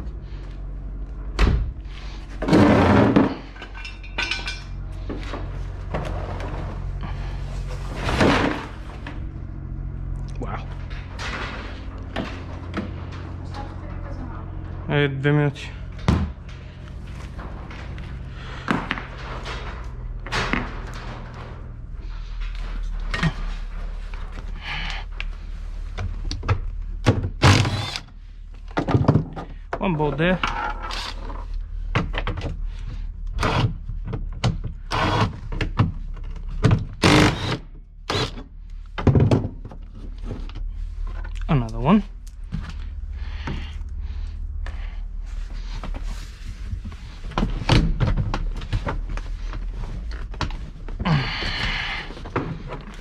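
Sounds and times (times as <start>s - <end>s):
steady low hum: 0.0s - 53.0s
hand tools clicking and knocking: 27.4s - 28.1s, 34.9s - 35.4s, 37.0s - 38.4s.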